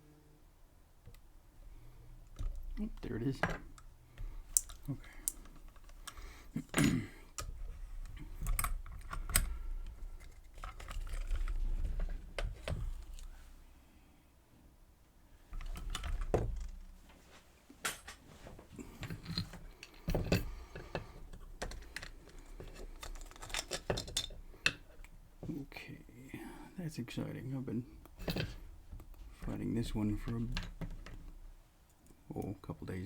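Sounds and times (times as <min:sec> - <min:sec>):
lock picks clicking metallically: 0:02.3 - 0:07.5.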